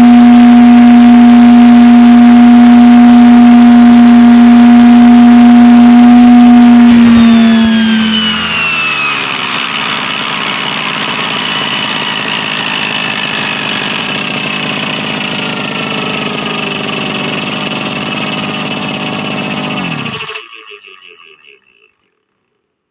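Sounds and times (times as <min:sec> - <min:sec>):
spinning blade whir: 0:00.2 - 0:22.6
brush cutter engine idling: 0:06.8 - 0:21.8.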